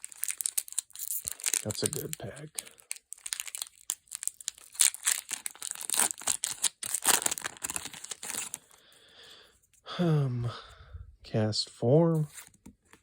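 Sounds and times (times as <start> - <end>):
foil wrapper crinkling and tearing: 0.0 - 8.7.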